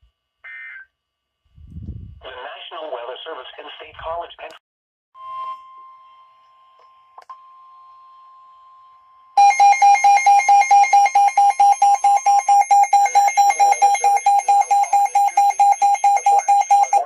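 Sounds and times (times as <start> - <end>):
rapid alarm beeping: 9.4 - 17.0.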